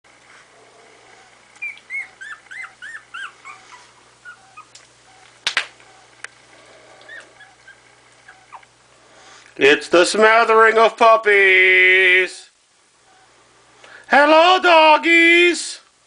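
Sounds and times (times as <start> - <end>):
puppies whimpering: 1.2 - 5.2, 6.9 - 8.7.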